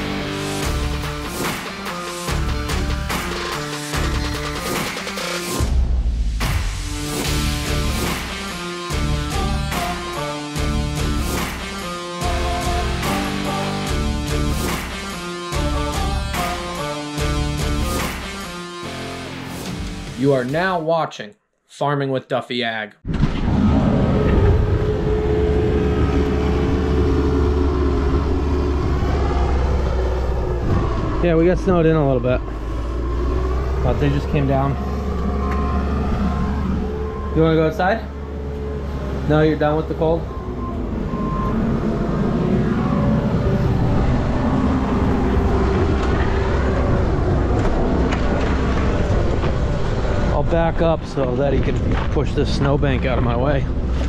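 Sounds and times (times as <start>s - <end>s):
vehicle engine running: 24.4s - 50.6s.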